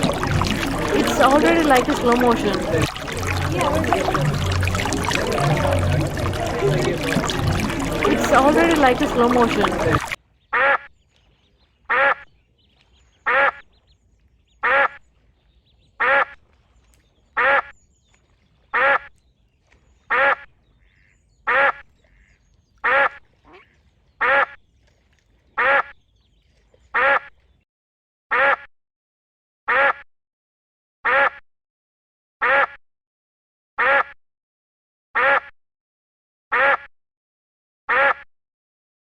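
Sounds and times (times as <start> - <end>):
duck quacking: 11.9 - 12.2, 37.9 - 38.2.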